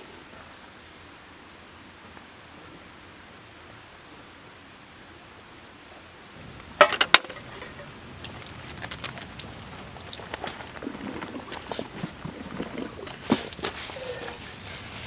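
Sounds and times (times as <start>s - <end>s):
drips tapping: 6.4s - 15.0s
rain hissing: 6.4s - 15.0s
sharp clacks: 6.6s - 10.8s.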